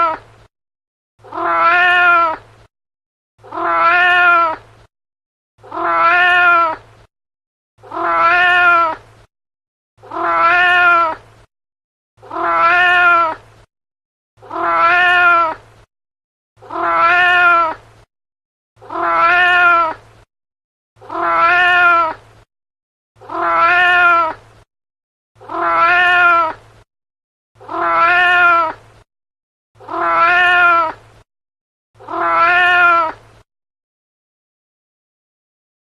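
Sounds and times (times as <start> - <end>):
cat meowing: 1.2 - 2.4, 3.4 - 4.6, 5.6 - 6.8, 7.8 - 9.0, 10.0 - 11.2, 12.2 - 13.4, 14.4 - 15.6, 16.6 - 17.8, 18.8 - 20.0, 21.0 - 22.2, 23.2 - 24.4, 25.4 - 26.6, 27.6 - 28.8, 29.8 - 31.0, 32.0 - 33.2.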